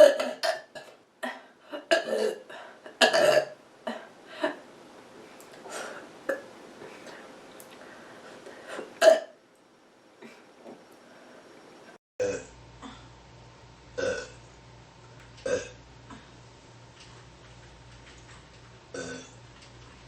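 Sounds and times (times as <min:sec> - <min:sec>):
person burping: 0:00.0 - 0:04.1, 0:09.0 - 0:09.3, 0:12.2 - 0:13.1, 0:14.0 - 0:14.4, 0:15.4 - 0:15.8, 0:18.9 - 0:19.4.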